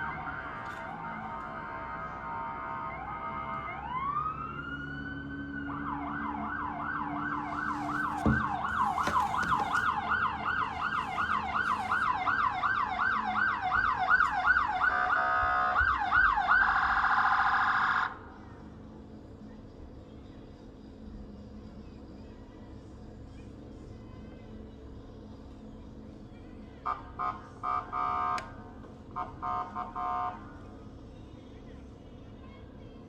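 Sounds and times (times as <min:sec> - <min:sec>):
emergency vehicle siren: 0:00.0 - 0:18.3, 0:26.8 - 0:30.6.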